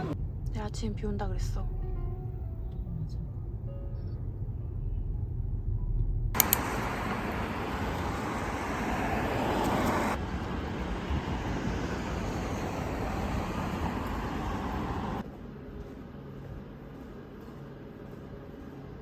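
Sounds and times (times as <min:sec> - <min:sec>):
sharp clicks: 0:06.4 - 0:08.0
road traffic noise: 0:06.4 - 0:15.3.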